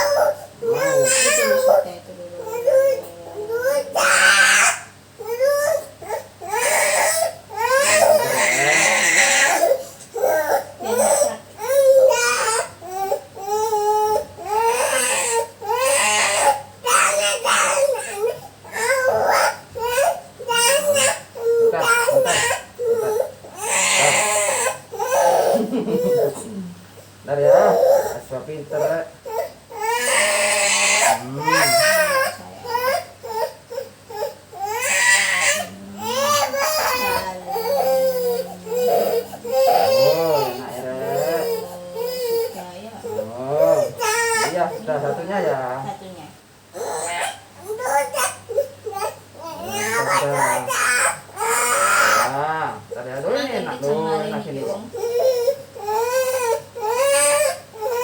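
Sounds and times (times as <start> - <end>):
child screaming cries: 0.0 - 1.7, 3.9 - 5.8
small child crying: 0.0 - 1.8, 2.4 - 26.5, 29.3 - 44.9, 46.8 - 52.4, 55.0 - 58.0.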